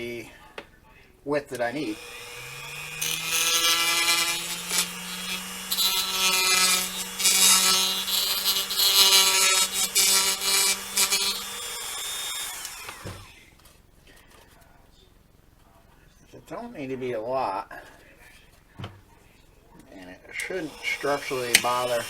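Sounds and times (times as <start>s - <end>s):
rotary tool grinding plastic: 1.8s - 13.4s, 20.4s - 22.0s.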